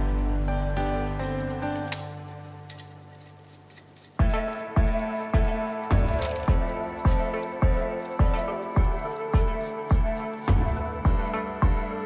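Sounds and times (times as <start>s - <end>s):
held music chord: 0.0s - 3.6s, 4.2s - 12.0s.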